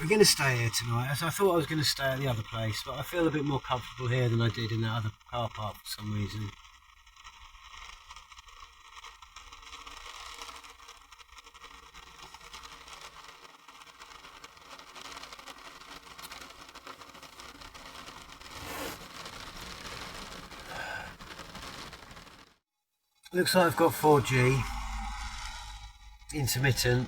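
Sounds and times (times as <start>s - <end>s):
rain pattering on a vehicle roof: 0.0s - 22.6s
rustling: 12.0s - 22.6s.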